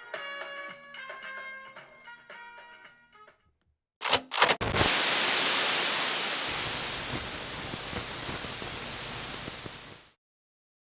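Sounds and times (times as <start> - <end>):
sharp crackles: 4.6 - 10.1
static hiss: 4.6 - 10.2.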